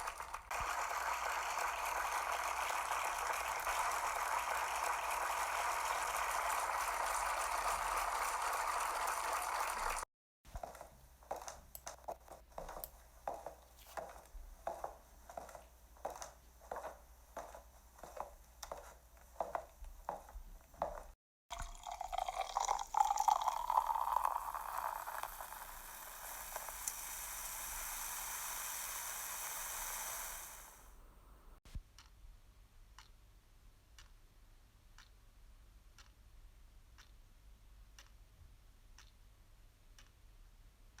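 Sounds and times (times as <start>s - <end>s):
faint regular ticks: 32.0s - 32.2s, 33.0s - 33.2s, 34.0s - 34.2s, 35.0s - 35.2s, 36.0s - 36.3s, 37.0s - 37.3s, 37.9s - 38.3s, 39.0s - 39.3s, 40.0s - 40.2s.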